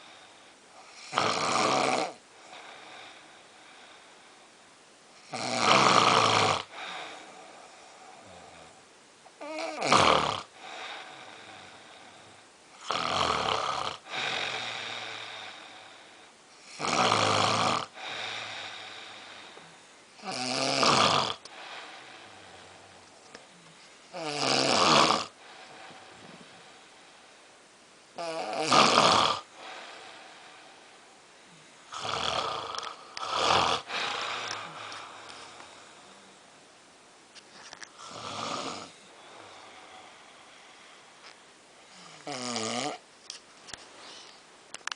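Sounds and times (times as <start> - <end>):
quiet breath: 0.0 - 1.0, 2.2 - 5.2, 6.6 - 8.9, 10.5 - 12.7, 14.0 - 16.7, 17.9 - 20.2, 21.4 - 24.2, 25.3 - 28.2, 29.4 - 32.0, 32.8 - 36.8, 38.9 - 42.3, 43.3 - 44.6
person snoring loudly: 0.8 - 3.1, 5.2 - 7.3, 9.4 - 12.1, 12.8 - 15.8, 16.6 - 19.4, 20.2 - 22.7, 24.1 - 25.7, 28.2 - 30.2, 31.9 - 35.6, 38.0 - 40.2, 41.9 - 43.0.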